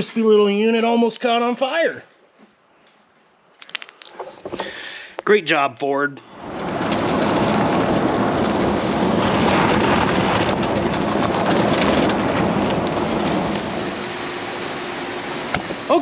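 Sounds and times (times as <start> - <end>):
steady rushing noise: 6.2 - 16.0.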